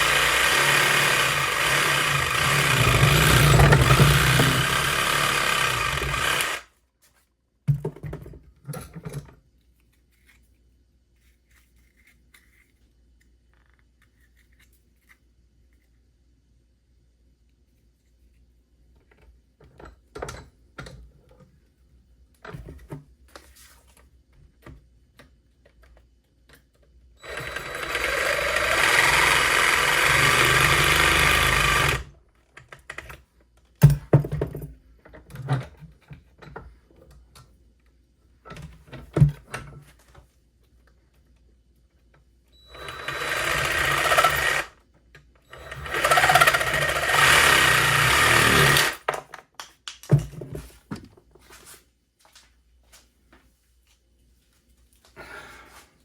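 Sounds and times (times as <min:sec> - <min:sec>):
power tool cutting conduit: 0:00.0 - 0:06.7, 0:27.2 - 0:32.1, 0:42.6 - 0:44.8, 0:45.5 - 0:49.1.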